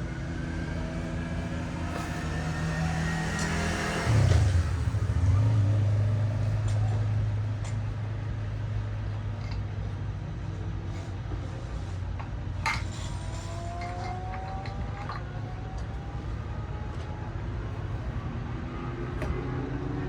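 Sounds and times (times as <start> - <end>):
low engine hum: 0.0 - 20.0.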